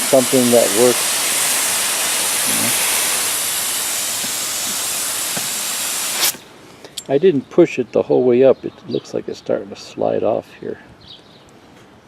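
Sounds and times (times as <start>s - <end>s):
garden hose spraying water: 0.0s - 6.5s.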